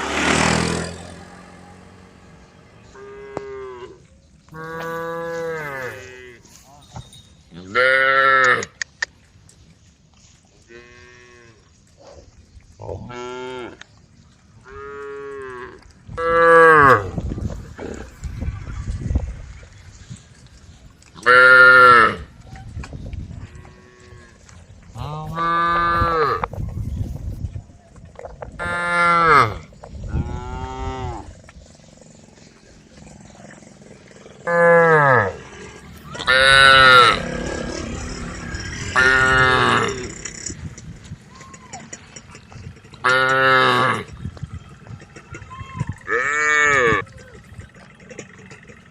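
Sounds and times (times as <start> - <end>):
cows mooing: 0.0 - 6.6, 14.6 - 18.2, 21.2 - 22.3, 25.0 - 26.5, 28.6 - 31.4, 33.0 - 48.9
cattle mooing: 4.6 - 6.6, 34.3 - 40.8, 42.9 - 44.1, 46.0 - 47.1
low rumbling noise: 15.8 - 21.1, 21.7 - 48.9.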